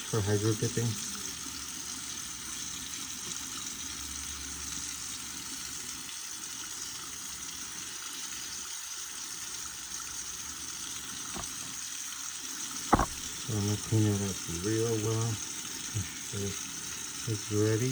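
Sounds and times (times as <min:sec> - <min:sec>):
tap water running into sink: 0:01.6 - 0:17.9.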